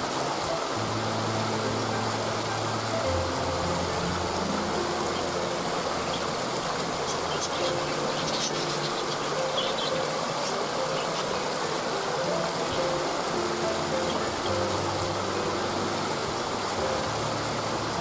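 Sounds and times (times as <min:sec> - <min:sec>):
soft music of low notes: 0:00.0 - 0:18.0
waterfall rushing: 0:00.0 - 0:18.0
bird chirping: 0:04.9 - 0:11.6.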